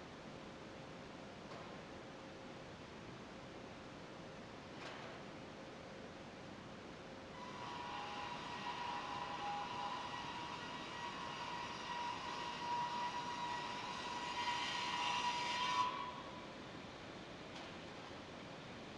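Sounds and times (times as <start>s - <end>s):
circular saw whining: 7.4s - 16.5s.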